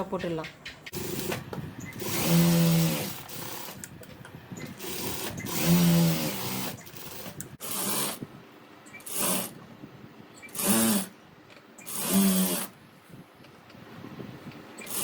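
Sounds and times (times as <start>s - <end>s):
sewing machine stitching: 0.9s - 3.9s, 4.6s - 8.2s, 9.0s - 9.6s, 10.5s - 11.1s, 11.8s - 12.8s, 14.8s - 15.0s.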